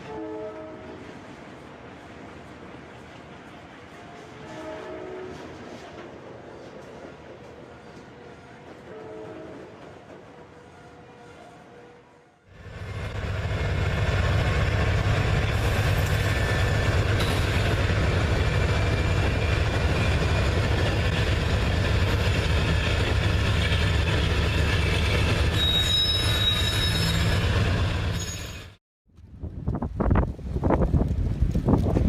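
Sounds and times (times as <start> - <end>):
train rumbling by: 0.0 - 28.8
high wheel squeal: 24.8 - 28.8.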